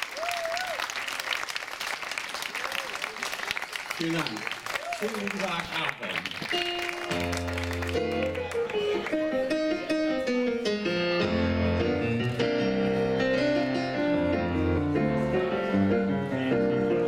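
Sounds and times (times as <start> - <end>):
solo piano: 6.7 - 17.0.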